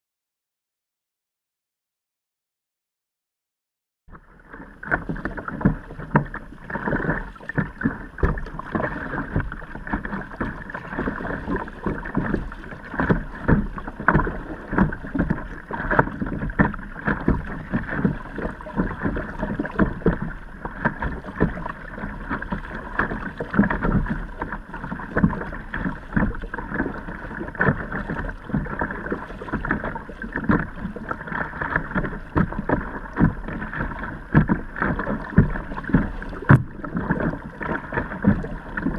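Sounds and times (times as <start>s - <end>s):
water splashing around kayak: 4.1s - 38.9s.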